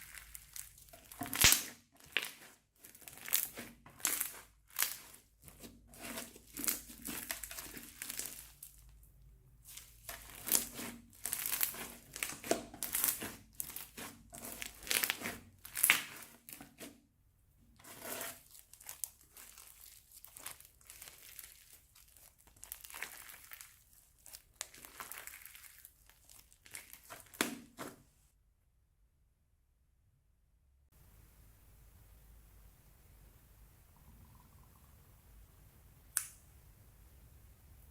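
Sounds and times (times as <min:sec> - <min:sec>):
plastic bags crinkling: 0:00.0 - 0:05.2
slime squishing: 0:00.0 - 0:17.0, 0:17.8 - 0:28.0.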